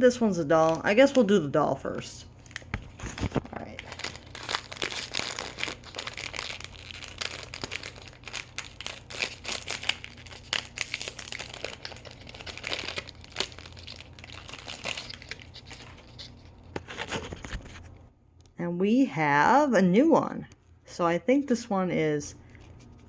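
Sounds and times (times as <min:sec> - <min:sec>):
plastic packaging crinkling and tearing: 0:02.4 - 0:17.8.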